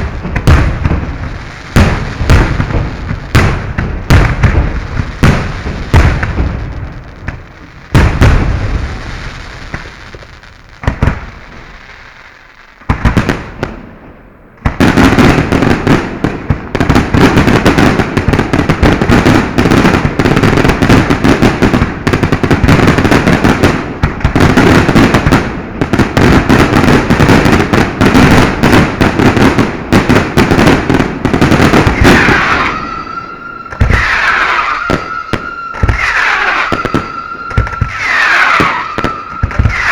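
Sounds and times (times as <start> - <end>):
firework whistling: 0.0 - 12.2, 26.0 - 39.9
fireworks bangs and crackle: 0.0 - 39.9.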